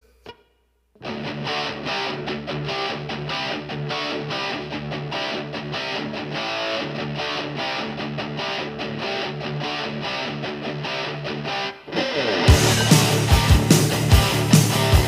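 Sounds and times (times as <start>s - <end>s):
distorted electric guitar riff: 0.0s - 15.0s
heavy drum beats: 12.5s - 15.0s.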